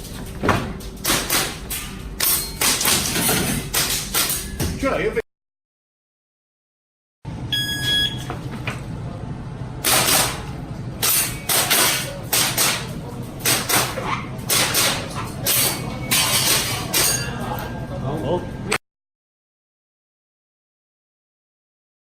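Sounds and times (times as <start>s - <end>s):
shot timer beep: 7.5s - 8.3s
airsoft pistol shots: 9.8s - 10.4s.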